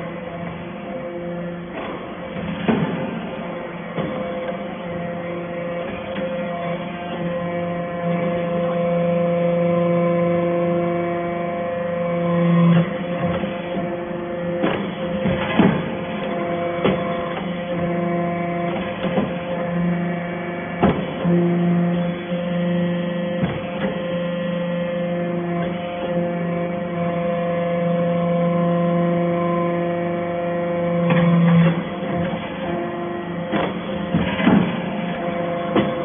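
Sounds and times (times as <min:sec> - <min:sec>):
baling press motor hum: 0:00.0 - 0:36.0.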